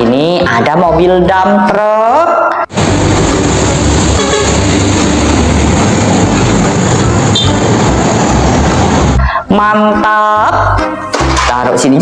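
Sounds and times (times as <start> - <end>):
road noise: 0.0 - 12.0
heavy vehicle engine rumble: 2.7 - 9.5.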